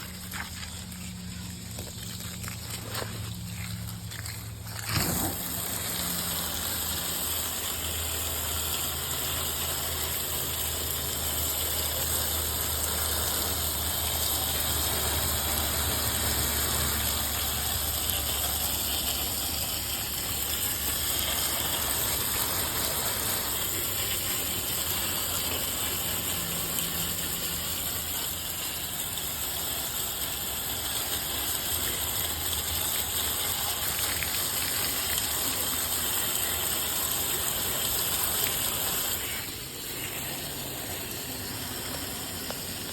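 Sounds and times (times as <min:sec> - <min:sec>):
low motor hum: 0:00.0 - 0:30.8
hose water spraying on coils: 0:00.0 - 0:42.9.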